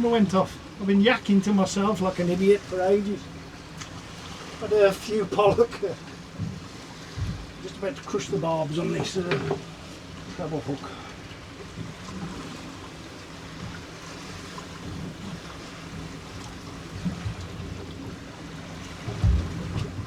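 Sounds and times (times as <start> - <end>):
waves slapping boat hull: 0.0 - 20.0
loud low thump: 19.1 - 20.0
wind noise: 19.1 - 20.0.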